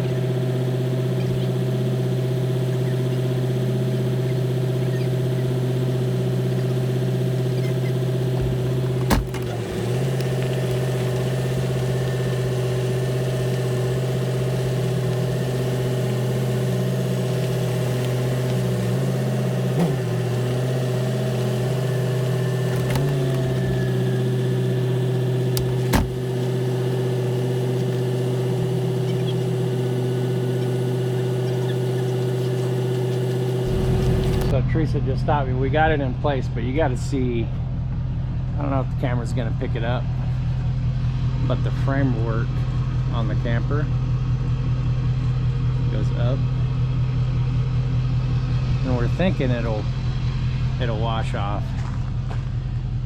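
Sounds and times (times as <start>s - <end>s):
engine running steadily: 0.0s - 53.0s.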